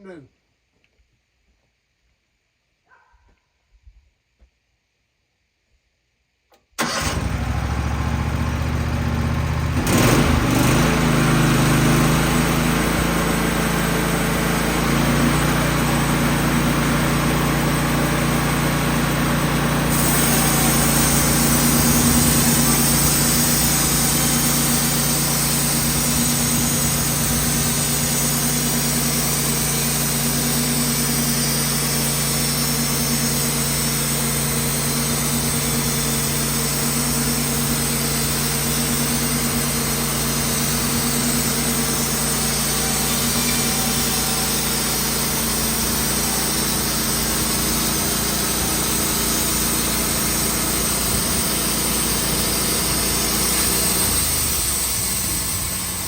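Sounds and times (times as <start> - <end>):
sawmill engine running: 6.8 - 56.0
band blade sawing log: 19.7 - 29.4.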